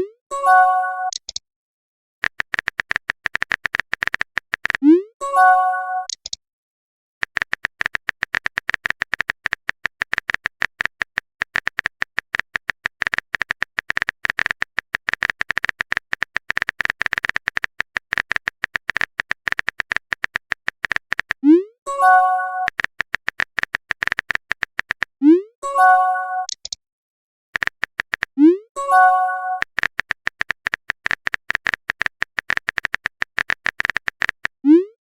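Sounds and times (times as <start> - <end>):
keyboard key clicks: 2.2 - 4.8, 7.2 - 21.4, 22.6 - 25.1, 27.6 - 28.4, 29.5 - 34.6.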